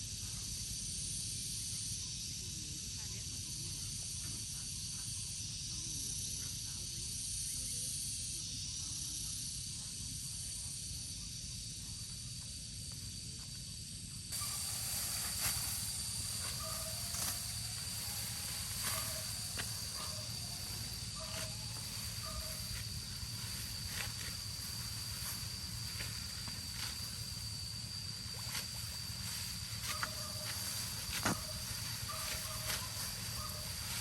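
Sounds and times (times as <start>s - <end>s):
steady high hiss: 14.3s - 34.0s.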